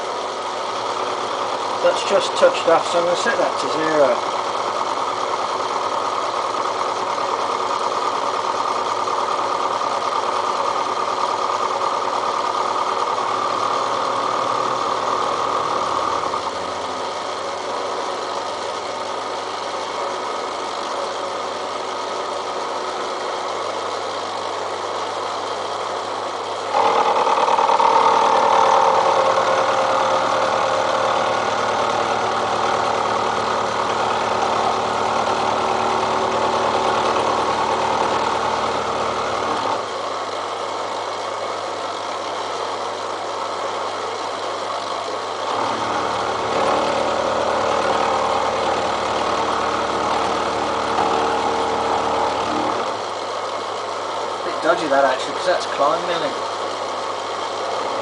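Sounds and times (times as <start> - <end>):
milling machine cutting steel: 12.9 - 20.0, 26.5 - 40.0, 45.2 - 54.5.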